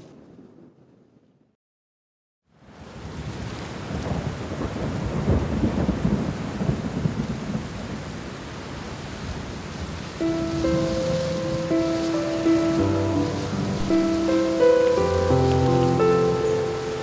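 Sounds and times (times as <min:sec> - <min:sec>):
low roll of thunder: 0:00.0 - 0:01.6, 0:02.9 - 0:08.1, 0:09.8 - 0:17.0
rain falling: 0:02.6 - 0:17.0.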